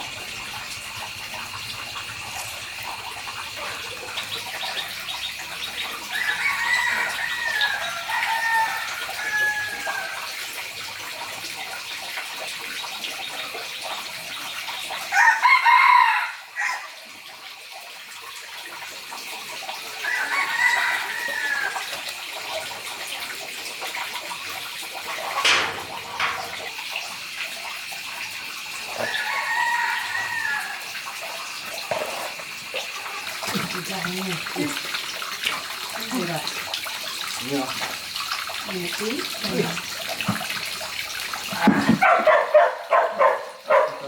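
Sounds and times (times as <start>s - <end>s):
rooster crowing: 6.1s - 10.4s, 15.1s - 17.0s, 20.0s - 22.0s, 29.0s - 31.1s.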